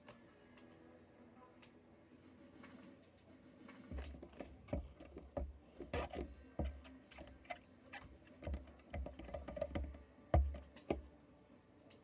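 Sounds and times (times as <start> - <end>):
slime kneaded by hand: 3.9 - 7.6.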